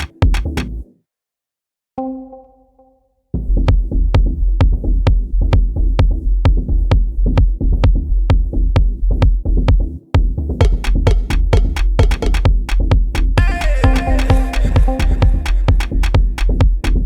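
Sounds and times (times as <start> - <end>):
sharp ticks: 0.0 - 0.7, 10.6 - 17.0
electronic beat: 0.0 - 0.8, 3.4 - 17.0.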